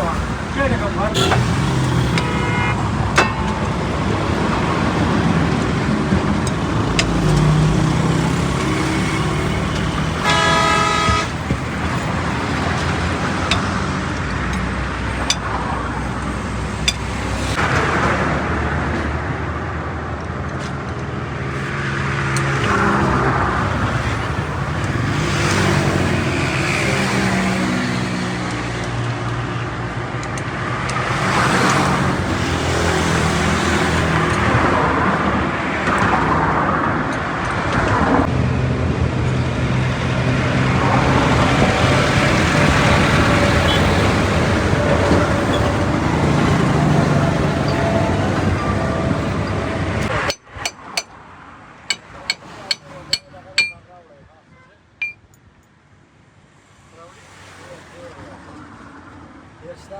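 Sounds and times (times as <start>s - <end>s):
road traffic passing: 0.0s - 54.0s, 54.9s - 59.9s
vehicle horn: 1.1s - 4.4s, 9.5s - 13.6s, 43.6s - 44.2s, 46.9s - 50.2s
sharp knocks: 1.2s - 7.6s, 50.0s - 51.2s, 51.9s - 53.8s.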